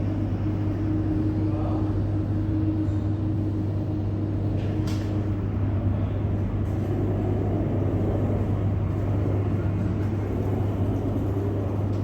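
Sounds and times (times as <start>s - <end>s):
constant hum: 0.0s - 12.0s
low mechanical rumble: 0.0s - 12.0s.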